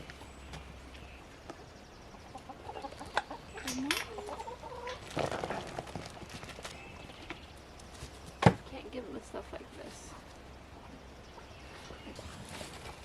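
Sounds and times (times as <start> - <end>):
chickens clucking: 0.0 - 8.4.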